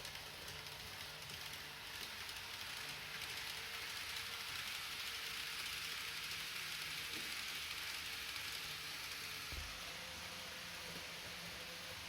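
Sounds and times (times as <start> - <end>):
model train wheels hissing on rail: 0.0 - 12.0.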